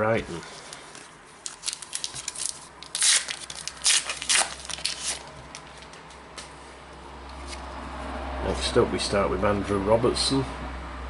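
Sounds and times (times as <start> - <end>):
card pack wrapper tearing: 1.4 - 5.9.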